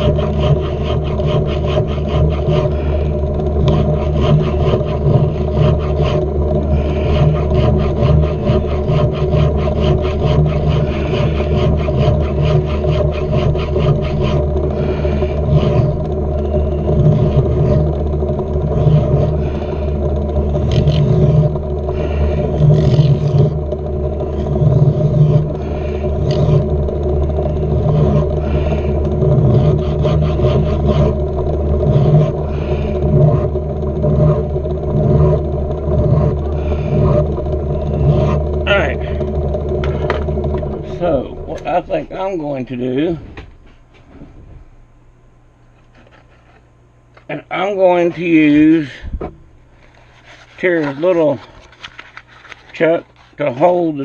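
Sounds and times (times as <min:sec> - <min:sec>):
hand file scraping metal: 0:00.0 - 0:23.6, 0:24.2 - 0:26.8, 0:27.4 - 0:39.2, 0:49.8 - 0:54.0
metal lathe running: 0:00.0 - 0:44.9, 0:45.7 - 0:54.0.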